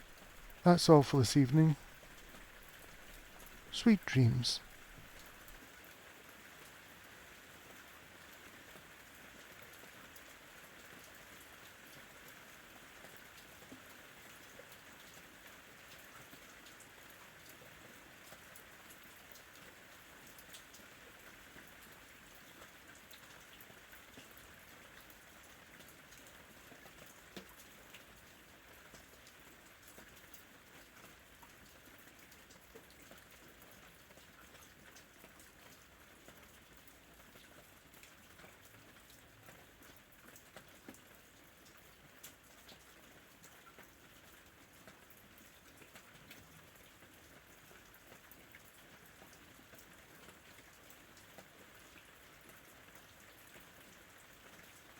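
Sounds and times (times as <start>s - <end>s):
rainfall hiss: 0.0s - 5.4s.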